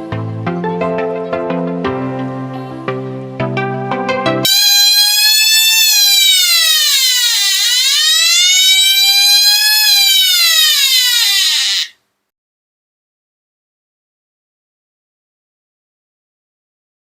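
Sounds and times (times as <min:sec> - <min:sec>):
buzzy wailing siren tone: 0:04.5 - 0:11.9.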